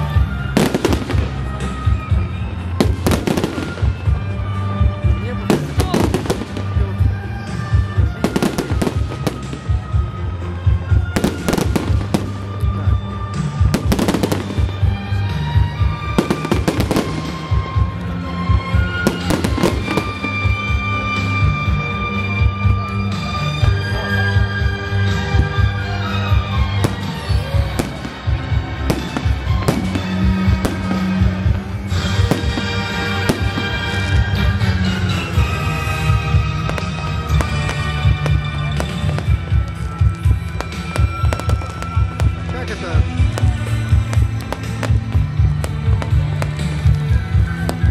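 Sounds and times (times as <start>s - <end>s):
fireworks bangs and crackles: 0.0s - 47.9s
music playing: 0.0s - 47.9s.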